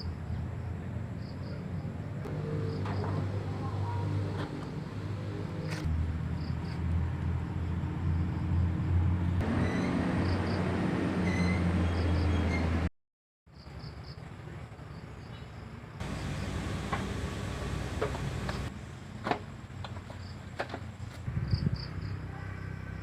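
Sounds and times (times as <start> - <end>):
steady low hum: 16.0 - 18.7.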